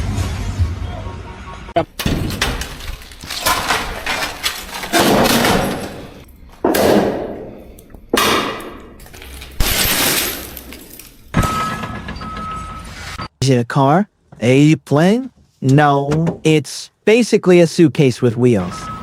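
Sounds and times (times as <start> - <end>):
loud crashing impacts: 1.8 - 11.6.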